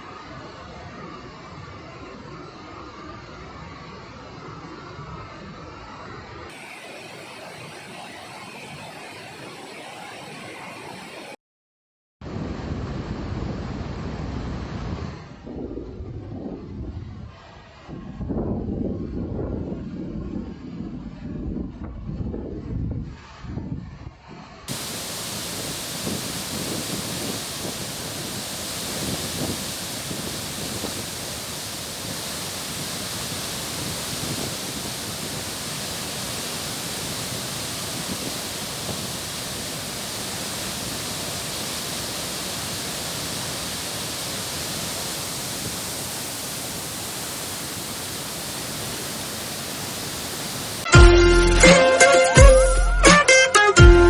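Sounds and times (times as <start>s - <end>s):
waterfall rushing: 6.5s - 9.0s, 24.7s - 50.9s.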